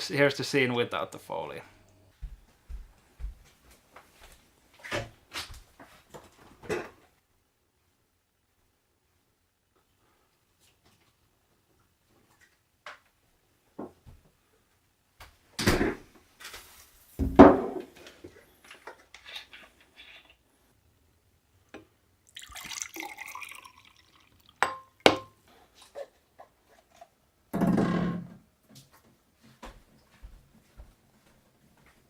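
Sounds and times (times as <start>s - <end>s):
cola pouring into a glass: 22.2s - 25.2s
glass clinks: 24.6s - 25.4s.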